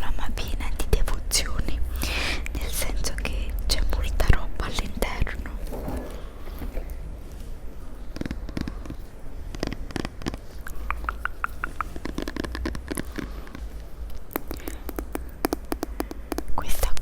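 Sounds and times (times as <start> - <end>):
low hum: 0.0 - 17.0
fingernails tapping small items: 14.4 - 16.6.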